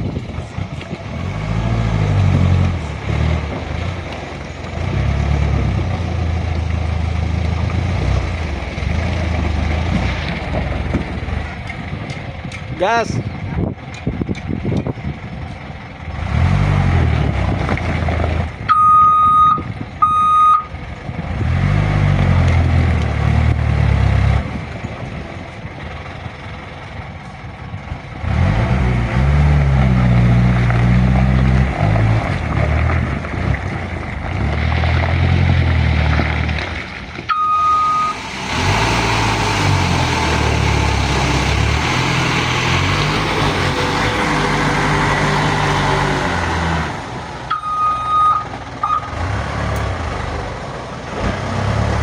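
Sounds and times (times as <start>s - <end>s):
diesel truck engine revving: 0.0s - 52.0s
short high beeps: 18.7s - 20.7s, 37.3s - 38.2s, 47.5s - 49.1s.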